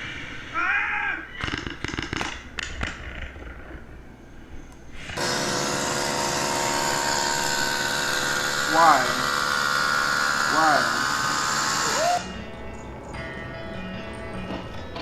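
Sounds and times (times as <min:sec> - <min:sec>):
sharp knocks: 0:01.4 - 0:03.9
machine whirring and humming: 0:01.4 - 0:15.0.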